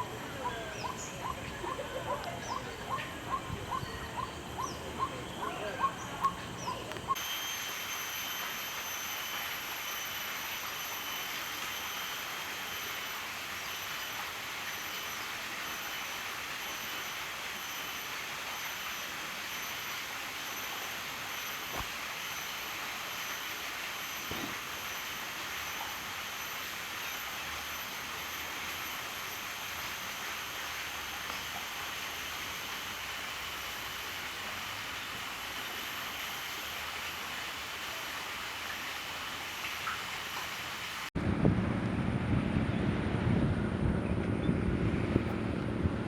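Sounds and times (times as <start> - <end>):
thin high constant tones: 0.0 - 38.2
outdoor hiss: 6.9 - 41.2.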